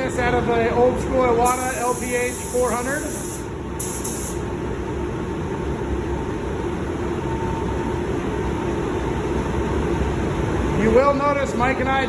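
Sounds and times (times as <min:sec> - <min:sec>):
low mechanical hum: 0:00.0 - 0:12.0
spray gun hissing: 0:01.4 - 0:04.4.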